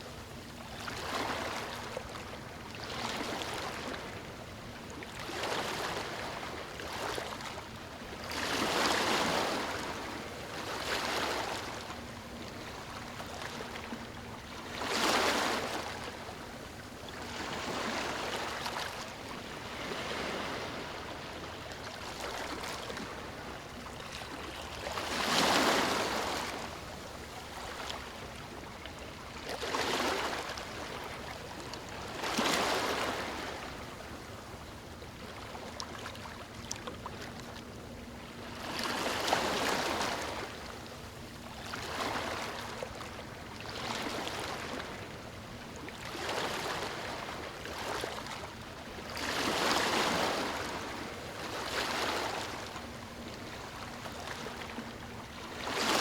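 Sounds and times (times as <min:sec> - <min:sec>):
waves breaking on beach: 0:08.2 - 0:12.4, 0:17.2 - 0:23.5, 0:24.3 - 0:28.1, 0:45.9 - 0:56.0
steady surf wash: 0:19.4 - 0:21.4.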